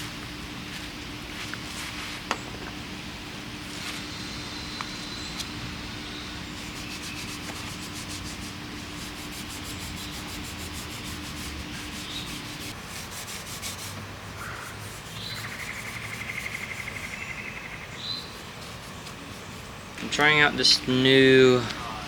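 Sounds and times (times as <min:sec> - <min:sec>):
scrubbing pad strokes: 0:06.5 - 0:17.2, 0:18.2 - 0:20.8.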